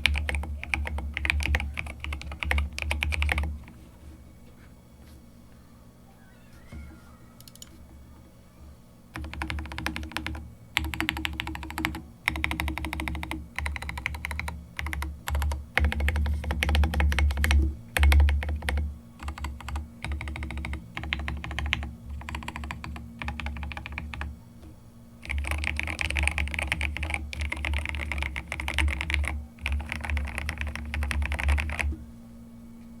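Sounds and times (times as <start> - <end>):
typing on mechanical keyboard: 0.0 - 3.5, 9.2 - 24.3, 25.2 - 31.9.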